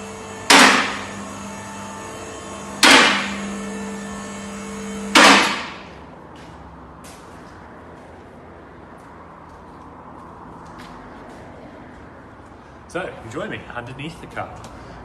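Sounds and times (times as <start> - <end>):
electric lift motor humming: 0.0 - 6.0
loud sharp metal clank: 0.5 - 1.2, 2.8 - 3.5, 5.0 - 5.9.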